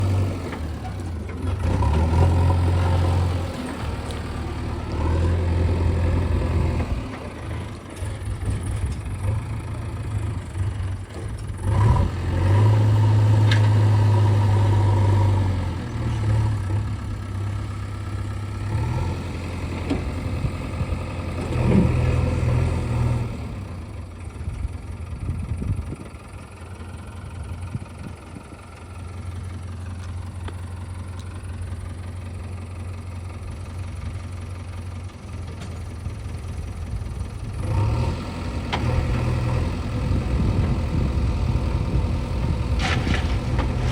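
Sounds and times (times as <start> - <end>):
diesel engine revving under load: 0.0 - 24.1, 36.0 - 43.9.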